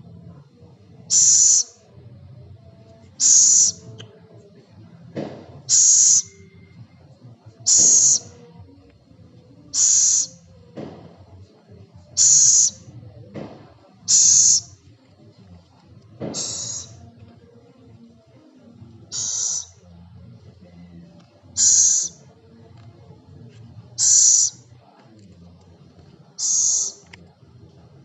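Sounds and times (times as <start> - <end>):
owl giving harsh hisses: 1.1 - 1.7, 3.2 - 3.8, 5.7 - 6.3, 7.7 - 8.3, 9.8 - 10.4, 12.2 - 12.8, 14.1 - 14.7, 16.4 - 17.0, 19.1 - 19.7, 21.6 - 22.2, 24.0 - 24.6, 26.4 - 27.0
owl low rasps: 1.1 - 1.8, 3.2 - 3.8, 5.7 - 6.4, 7.7 - 8.3, 9.8 - 10.4, 12.2 - 12.8, 14.1 - 14.7, 16.4 - 17.0, 19.1 - 19.8, 21.6 - 22.2, 24.0 - 24.6, 26.4 - 27.0.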